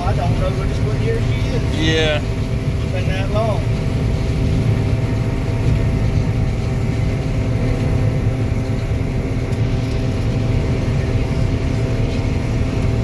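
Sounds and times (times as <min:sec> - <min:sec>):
combine harvester engine drone: 0:00.0 - 0:13.0.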